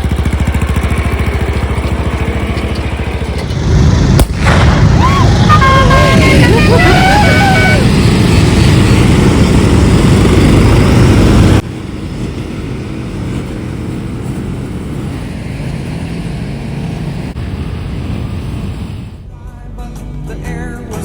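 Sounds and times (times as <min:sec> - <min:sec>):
ride-on lawnmower engine running: 0:00.0 - 0:04.3, 0:05.5 - 0:18.8.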